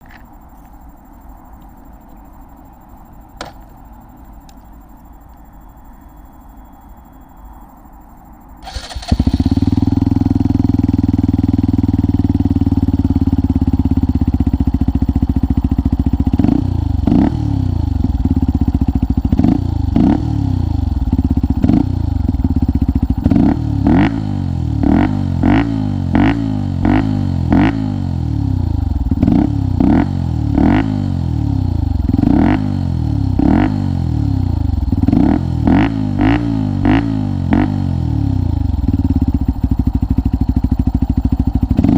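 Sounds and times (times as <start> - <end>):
motorcycle engine idling and revving: 8.6 - 41.9.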